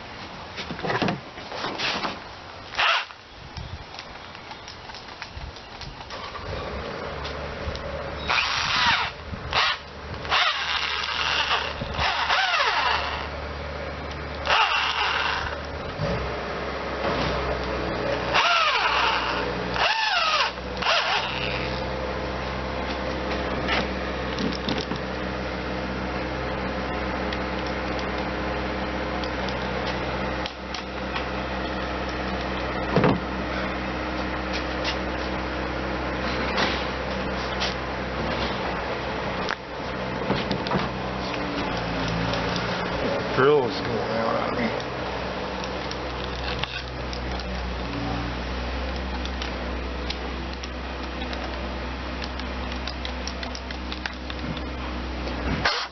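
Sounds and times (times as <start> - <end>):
power drill running: 8.3 - 13.3, 18.3 - 21.8.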